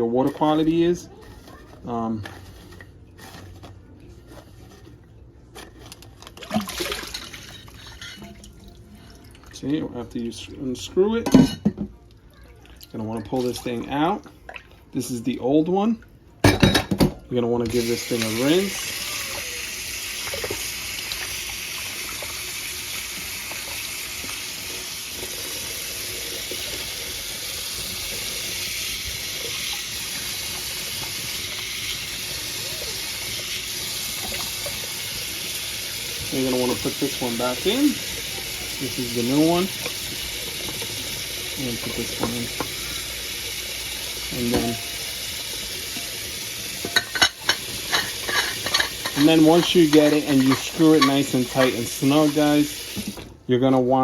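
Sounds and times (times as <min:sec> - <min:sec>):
water splashing and trickling: 0:06.2 - 0:10.0, 0:12.0 - 0:15.2, 0:17.7 - 0:53.4.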